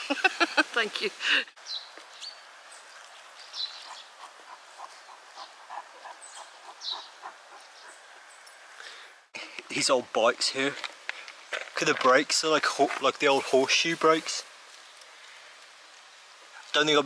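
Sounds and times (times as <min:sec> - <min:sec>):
outdoor hiss: 0:00.0 - 0:03.9, 0:08.1 - 0:17.0.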